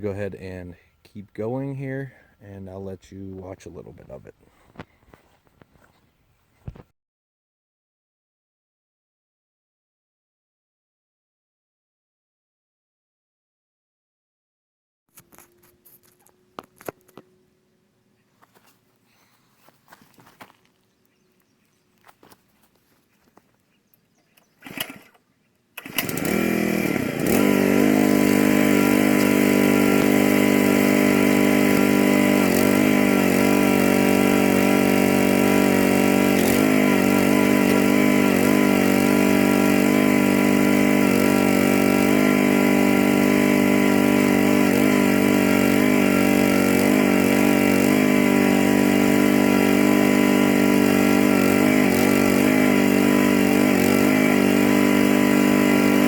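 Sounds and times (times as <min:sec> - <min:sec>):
small gasoline engine running: 0:24.4 - 0:25.2, 0:25.8 - 0:56.0.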